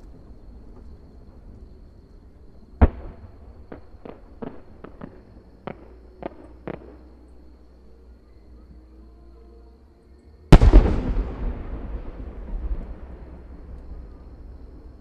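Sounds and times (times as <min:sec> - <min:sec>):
fireworks bursting: 0:10.5 - 0:13.4.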